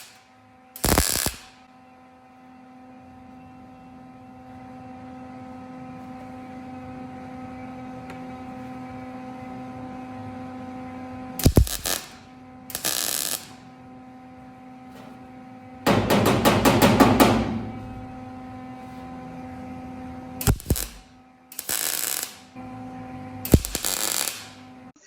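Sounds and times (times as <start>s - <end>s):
crackling welding arc: 0.0s - 0.2s, 0.8s - 1.6s, 11.4s - 13.7s, 20.4s - 22.6s, 23.4s - 24.6s
steady machine hum: 0.0s - 25.0s.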